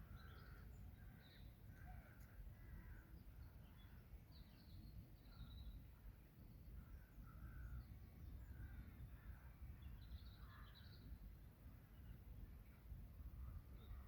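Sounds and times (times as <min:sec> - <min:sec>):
faint bird calls: 0:00.0 - 0:04.6, 0:06.8 - 0:11.2.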